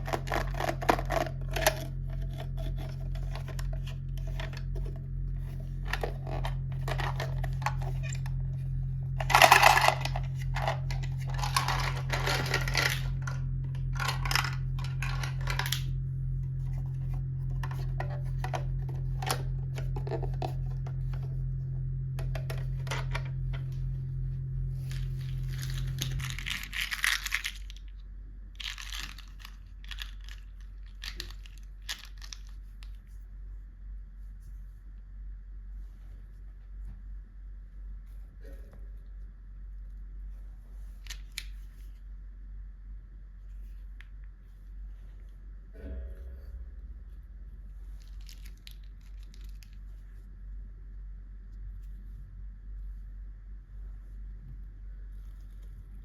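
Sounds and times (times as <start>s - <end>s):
steady low hum: 0.0s - 56.0s
packaging torn and crinkled: 24.8s - 27.9s.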